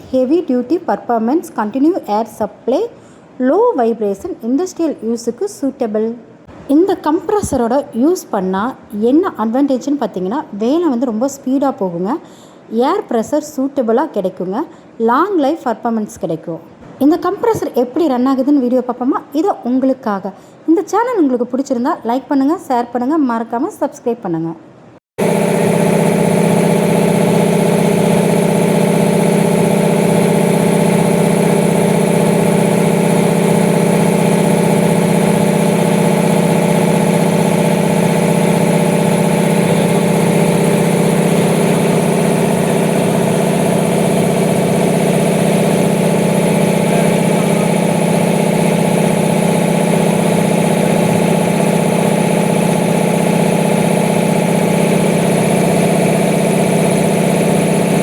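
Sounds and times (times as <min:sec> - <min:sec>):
air compressor running: 0:25.2 - 0:58.0.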